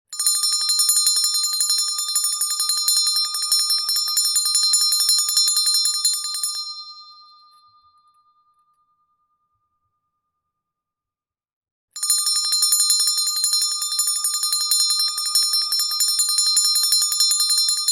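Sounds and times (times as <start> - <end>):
handbell ringing: 0.2 - 7.6, 12.0 - 17.9.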